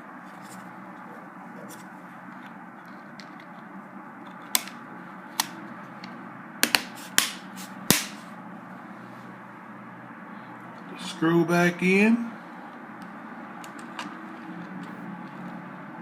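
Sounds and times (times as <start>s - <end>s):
sharp plastic clicks: 4.2s - 8.2s, 13.0s - 15.4s.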